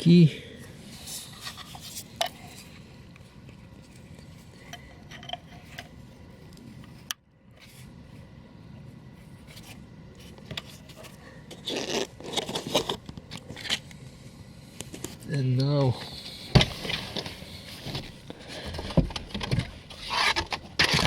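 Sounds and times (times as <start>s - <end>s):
scraping and rubbing of car parts: 0.9s - 8.2s, 9.2s - 13.9s, 16.1s - 21.0s.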